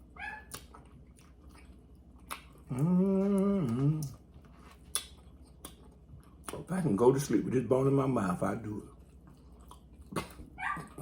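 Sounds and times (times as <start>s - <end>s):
person chewing meat off bones: 0.0s - 6.7s, 8.8s - 11.0s
closed-mouth mmm: 2.3s - 4.2s.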